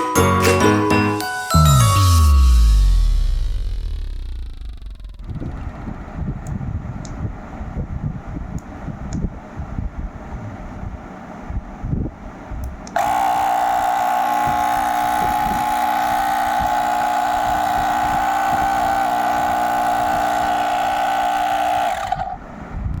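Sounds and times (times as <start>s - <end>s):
compressor motor running: 2.2s - 6.0s, 12.9s - 22.4s.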